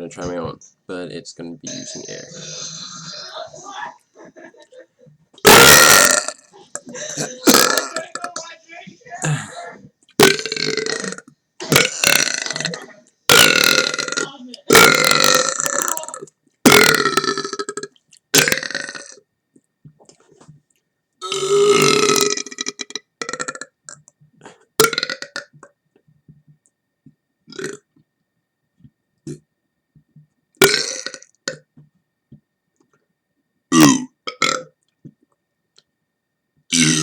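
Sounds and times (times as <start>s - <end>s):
man belching: 1.6s - 3.6s, 5.4s - 8.5s, 9.2s - 19.2s, 21.2s - 23.8s, 24.8s - 25.6s, 30.6s - 31.6s, 33.7s - 34.7s, 36.7s - 37.0s.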